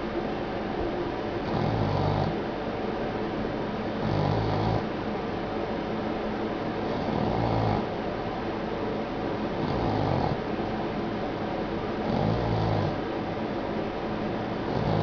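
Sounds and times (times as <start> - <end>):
dog snoring: 1.4 - 2.4, 4.0 - 4.9, 6.8 - 8.0, 9.5 - 10.5, 12.0 - 13.1, 14.6 - 15.0.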